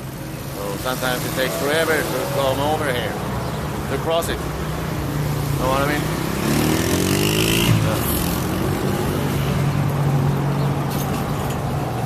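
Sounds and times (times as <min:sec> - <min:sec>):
passing road traffic: 0:00.0 - 0:12.0
vehicle accelerating: 0:00.6 - 0:10.7.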